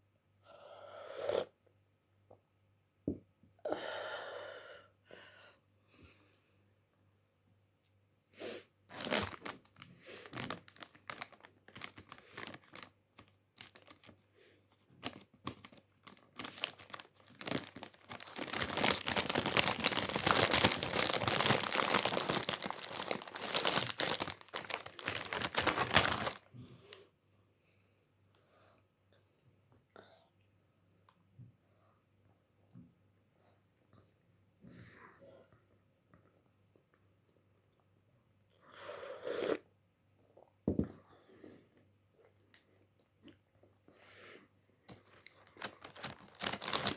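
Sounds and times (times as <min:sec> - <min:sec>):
wrapper crinkling: 0:08.9 - 0:14.2, 0:14.9 - 0:26.5, 0:44.9 - 0:46.9.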